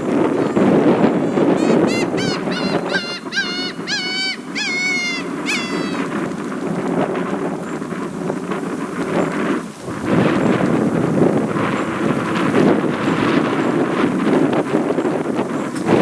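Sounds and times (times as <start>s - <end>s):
wind buffeting microphone: 0.0s - 16.0s
gull calling: 0.1s - 6.5s.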